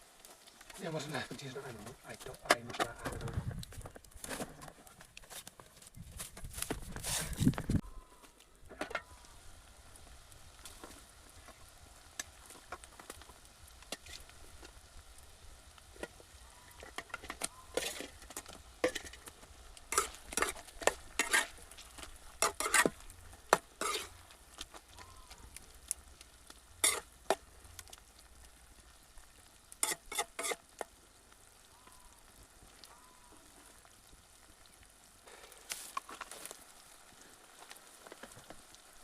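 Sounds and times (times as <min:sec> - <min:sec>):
chicken sizzling in a pan: 0:00.0 - 0:03.3, 0:07.0 - 0:39.0
scraping stirring strokes: 0:10.6 - 0:15.0, 0:15.9 - 0:28.0, 0:29.8 - 0:30.9.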